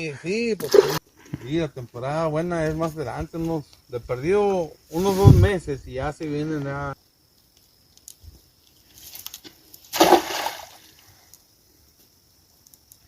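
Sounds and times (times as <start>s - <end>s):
faint clicks: 7.3s - 9.5s, 12.6s - 13.0s
water sloshing: 9.9s - 10.8s
splash in river water: 9.9s - 10.9s.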